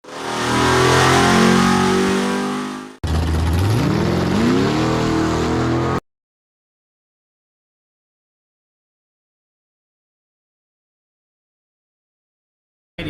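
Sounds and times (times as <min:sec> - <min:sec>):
car engine revving: 0:00.0 - 0:06.0.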